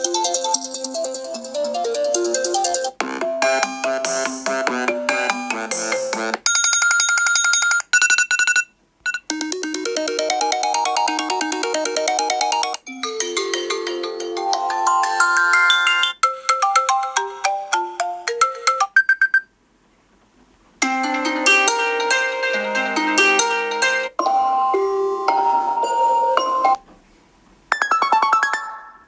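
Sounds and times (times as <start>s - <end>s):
electronic ringtone melodies: 0.0s - 19.5s, 20.8s - 26.8s.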